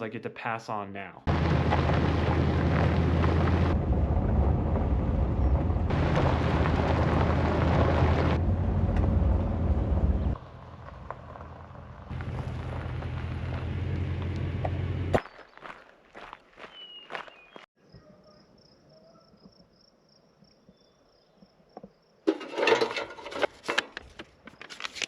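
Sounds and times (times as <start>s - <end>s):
car engine and road rumble: 1.3s - 15.2s.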